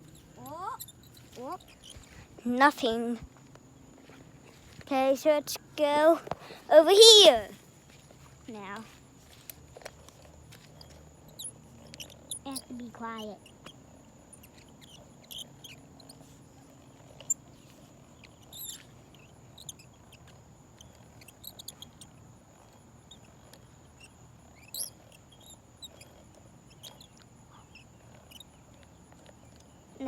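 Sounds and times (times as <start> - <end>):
high-pitched insect drone: 18.0 - 29.4.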